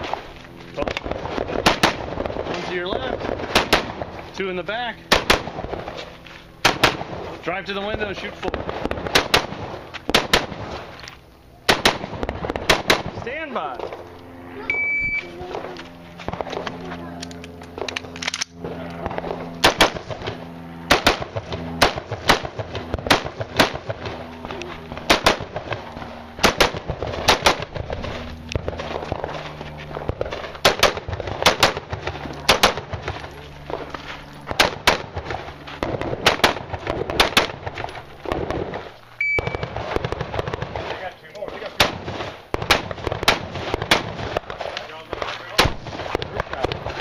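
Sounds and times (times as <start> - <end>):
steady low hum: 0.0 - 47.0
rifle shots: 0.8 - 4.2, 5.0 - 6.0, 6.6 - 7.4, 8.0 - 10.8, 11.6 - 13.3, 17.8 - 24.2, 24.9 - 33.8, 34.5 - 47.0.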